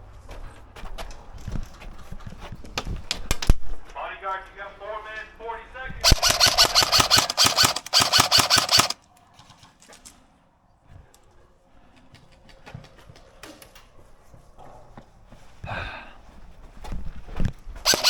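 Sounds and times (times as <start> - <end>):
airsoft rifle automatic burst: 6.0 - 9.0
faint airsoft shots: 6.0 - 9.0.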